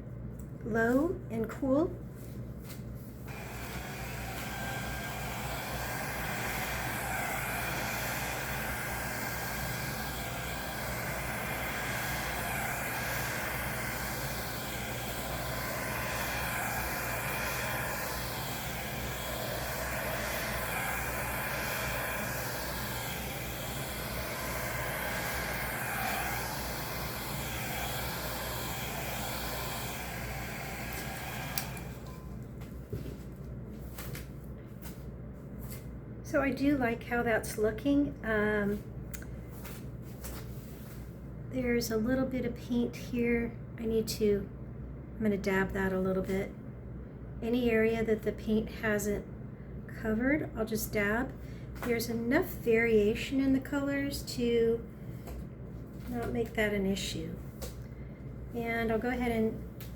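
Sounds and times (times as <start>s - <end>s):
hair dryer blowing air: 3.3s - 32.4s.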